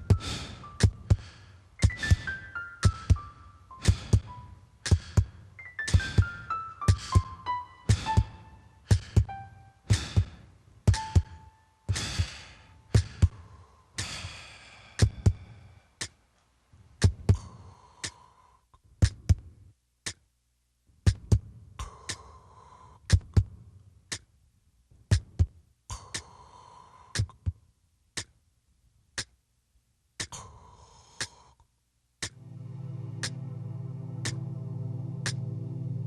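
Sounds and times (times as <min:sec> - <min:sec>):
heartbeat thumping: 0:00.0 - 0:03.3, 0:03.9 - 0:04.3, 0:04.9 - 0:12.3, 0:13.0 - 0:13.4
breathing: 0:00.1 - 0:02.6, 0:03.2 - 0:09.3, 0:09.9 - 0:10.5, 0:11.2 - 0:16.2, 0:17.3 - 0:18.7, 0:21.8 - 0:23.1, 0:25.9 - 0:27.4, 0:30.3 - 0:31.7
clock ticking: 0:06.9 - 0:10.3, 0:10.9 - 0:12.3
synthesizer drone: 0:32.4 - 0:36.0.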